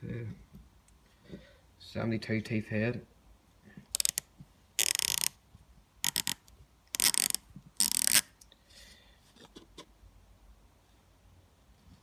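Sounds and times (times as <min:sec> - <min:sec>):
ratchet clicking: 0:03.9 - 0:04.2, 0:04.8 - 0:05.3, 0:06.0 - 0:06.4, 0:07.0 - 0:08.3.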